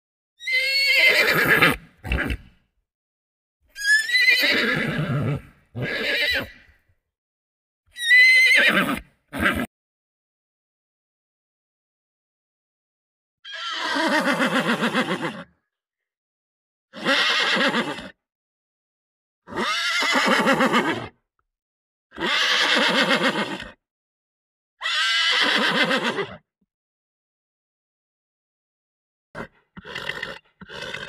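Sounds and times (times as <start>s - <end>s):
horse whinnying: 0.4s - 2.6s, 3.7s - 6.7s, 7.9s - 9.7s, 13.4s - 15.5s, 17.0s - 18.2s, 19.5s - 21.2s, 22.2s - 23.8s, 24.8s - 26.4s, 29.4s - 31.0s.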